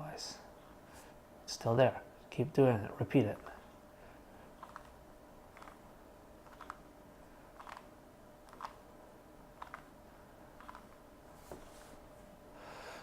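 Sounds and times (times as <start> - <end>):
puzzle cube plastic clicks: 6.4 - 6.8, 7.6 - 7.9, 8.5 - 8.8.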